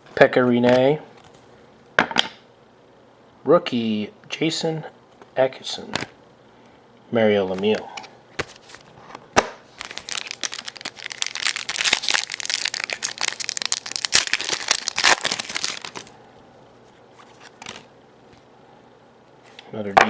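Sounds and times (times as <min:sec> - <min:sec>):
plastic wrapper crinkling and tearing: 0:09.6 - 0:16.2.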